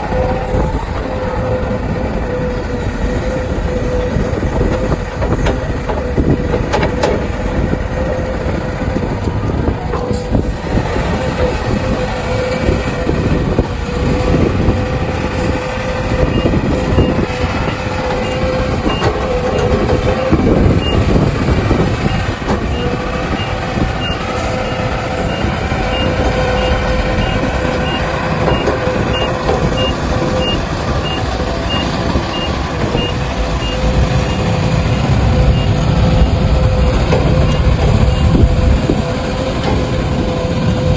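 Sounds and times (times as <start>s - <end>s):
heavy diesel machinery rumbling: 0.0s - 40.9s
backup alarm beeping: 16.2s - 21.2s, 22.0s - 38.5s.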